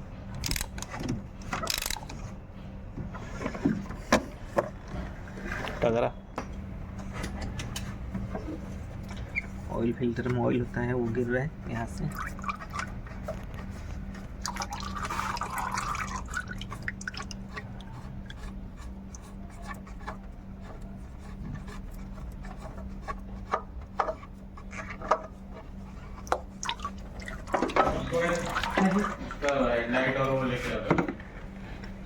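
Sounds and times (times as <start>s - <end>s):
steady low hum: 0.0s - 32.0s
oil trickling and dripping: 11.2s - 20.3s, 26.2s - 29.6s.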